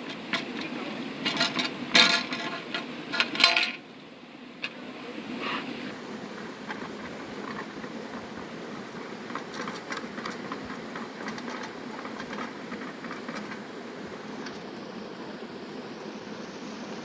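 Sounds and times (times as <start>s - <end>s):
flowing water: 0.0s - 17.0s
campfire crackling: 6.1s - 15.7s.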